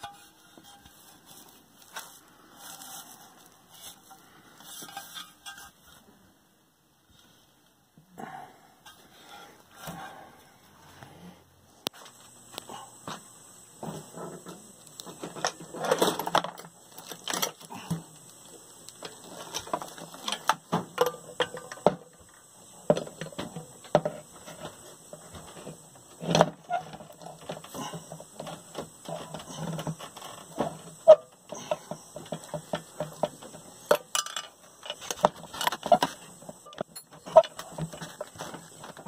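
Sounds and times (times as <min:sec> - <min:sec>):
metal tools clinking and clanking: 0:33.9 - 0:36.0, 0:36.7 - 0:38.3.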